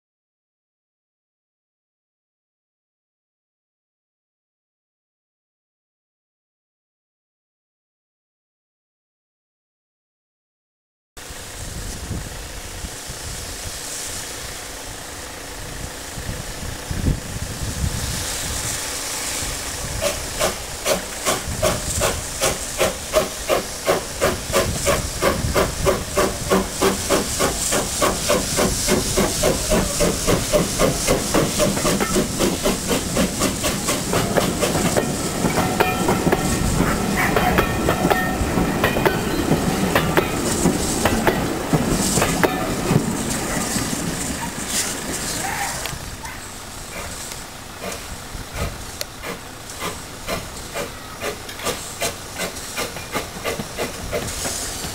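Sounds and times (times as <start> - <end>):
locomotive chuffing: 11.2 - 54.9
steam locomotive hissing: 11.2 - 54.9
wheels clattering over rail joints: 14.2 - 54.9.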